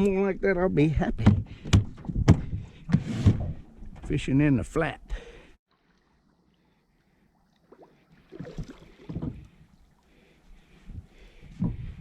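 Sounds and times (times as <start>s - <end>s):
water slapping boat hull: 5.7s - 11.9s.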